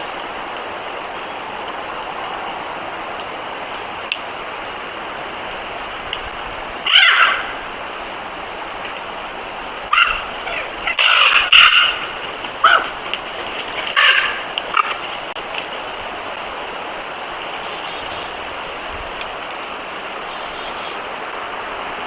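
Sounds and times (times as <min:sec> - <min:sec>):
steady rushing noise: 0:00.0 - 0:22.0
wolves whining and yipping: 0:06.9 - 0:07.5, 0:09.9 - 0:12.0, 0:12.6 - 0:13.0.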